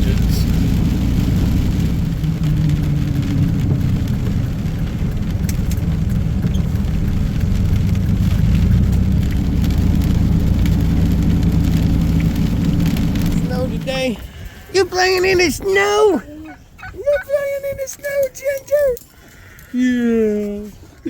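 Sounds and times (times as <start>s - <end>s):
low rumble with faint hum: 0.0s - 18.2s
light ticks: 2.4s - 13.5s, 17.8s - 19.8s.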